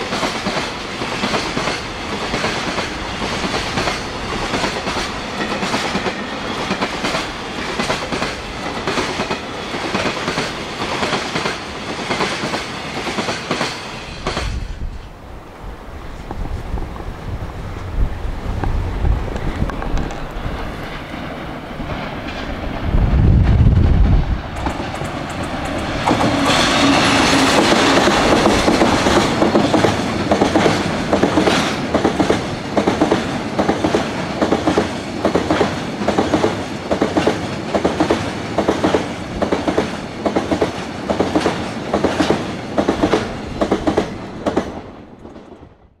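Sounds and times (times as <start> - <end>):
freight train passing: 0.0 - 46.0
wind buffeting microphone: 14.1 - 35.4.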